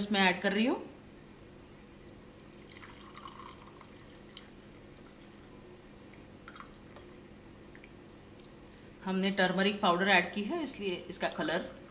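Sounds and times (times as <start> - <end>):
drink pouring into glass: 2.3 - 5.3, 6.4 - 7.2.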